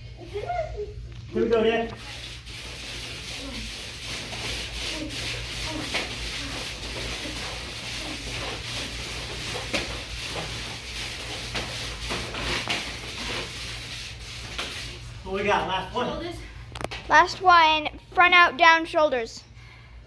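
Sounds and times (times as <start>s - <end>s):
frisbees scraping across floor: 1.4s - 15.5s.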